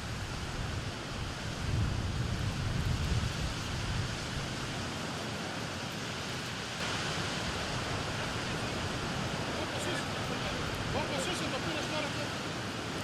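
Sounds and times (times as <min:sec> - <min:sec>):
wind buffeting microphone: 0:00.0 - 0:05.5
bright steady hiss: 0:00.0 - 0:13.0.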